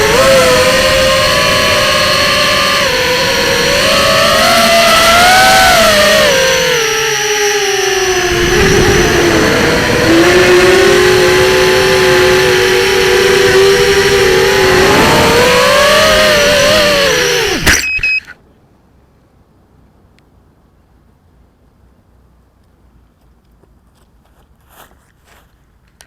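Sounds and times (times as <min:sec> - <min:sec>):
quadcopter motors whining: 0:00.0 - 0:18.4.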